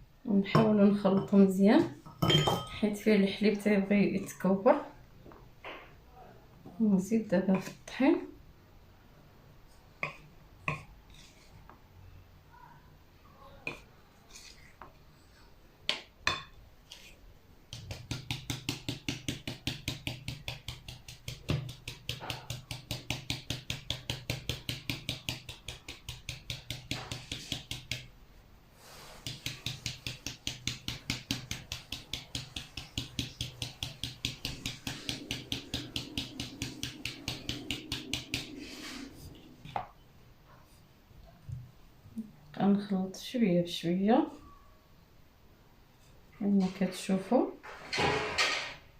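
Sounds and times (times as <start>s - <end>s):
batter mixed in bowl: 16.8s - 28.1s, 28.9s - 40.0s.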